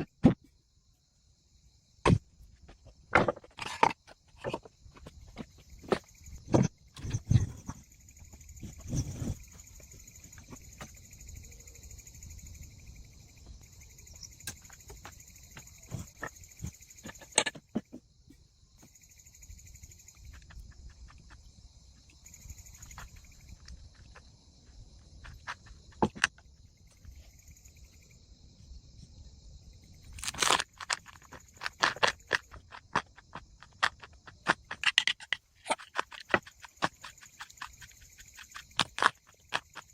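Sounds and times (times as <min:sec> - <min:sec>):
insects chirring: 0:00.0 - 0:39.9.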